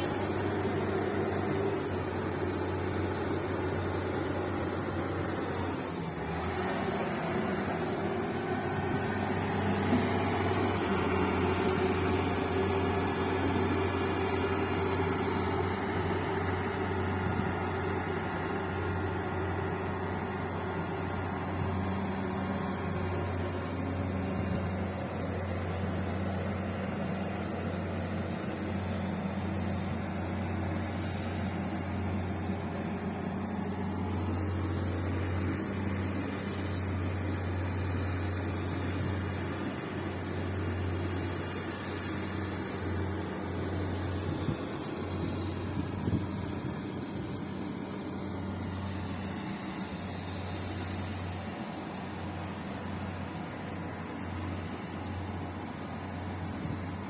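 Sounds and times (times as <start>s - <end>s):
bulldozer engine droning: 0.0s - 57.0s.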